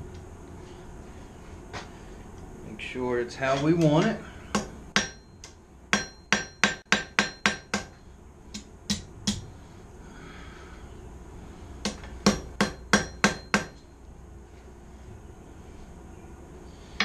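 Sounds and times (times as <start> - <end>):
hammer striking steel on anvil: 3.4 - 9.5, 11.8 - 13.8.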